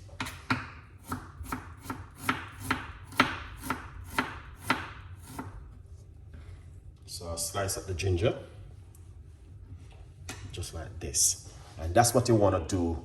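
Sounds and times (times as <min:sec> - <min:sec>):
knife slicing ginger: 0:01.0 - 0:05.6.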